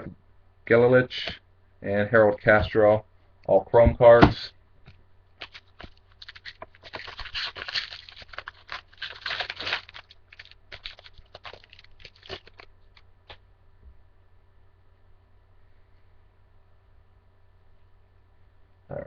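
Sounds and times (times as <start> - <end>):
foil wrapper crinkling and tearing: 5.4 - 13.4.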